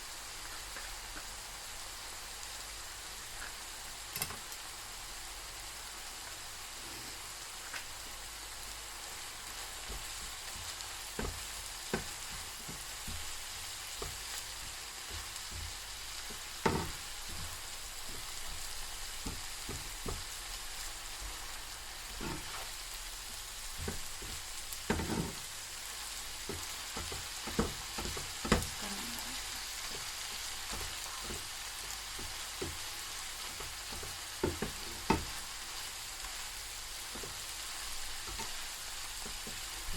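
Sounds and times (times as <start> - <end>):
beef sizzling in a pan: 0.0 - 39.9
utensil knocking and scraping: 23.8 - 25.4.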